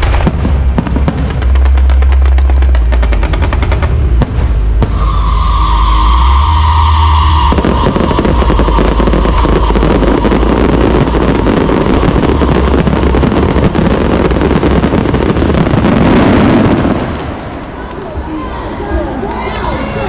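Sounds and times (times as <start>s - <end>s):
fireworks and firecrackers crackling: 0.0s - 20.0s
steady high tone: 4.9s - 14.9s.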